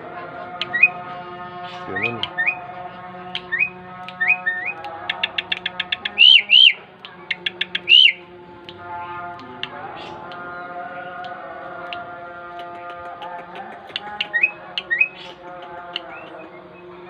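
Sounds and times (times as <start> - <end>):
starling whistled calls: 1.6 - 2.6, 3.4 - 8.2, 14.2 - 15.4
bird clicks: 3.3 - 8.8, 11.2 - 16.5.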